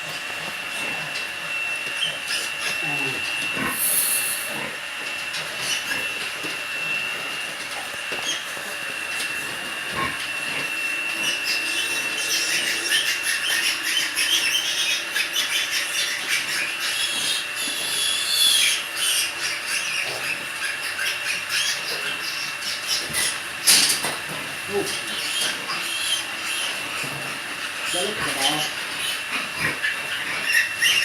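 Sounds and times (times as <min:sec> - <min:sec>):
piglets squealing: 0:01.9 - 0:04.8, 0:05.6 - 0:06.2, 0:08.1 - 0:08.8, 0:09.9 - 0:23.8, 0:24.7 - 0:31.0.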